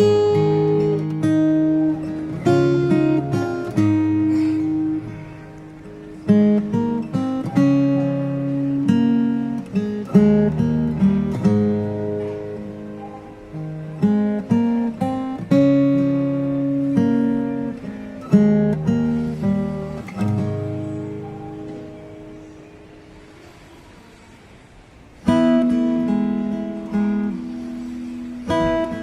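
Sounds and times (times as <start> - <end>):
acoustic guitar playing: 0.0 - 29.0.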